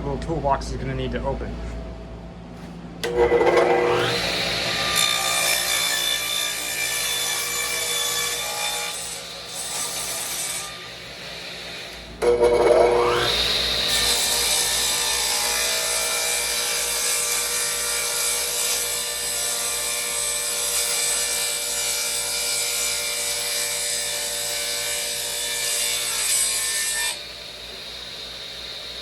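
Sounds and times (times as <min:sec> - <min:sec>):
power saw motor whining: 0:03.0 - 0:06.6
saw blade cutting wood: 0:03.0 - 0:29.0.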